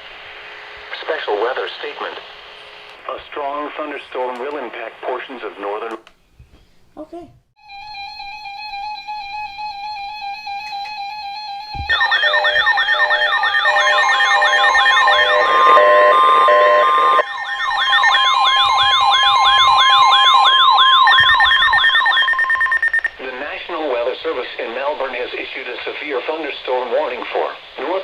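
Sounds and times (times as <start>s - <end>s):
steady high tone: 7.6s - 25.1s
warbling siren-like alarm: 11.3s - 23.2s
steady alarm tone: 11.5s - 24.0s.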